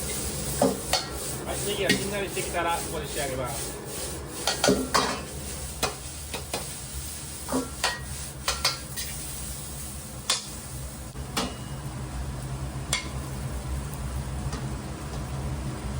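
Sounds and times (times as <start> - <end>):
metal utensil scraping a pan: 0.0 - 9.2
rice sizzling in a pan: 0.0 - 15.0.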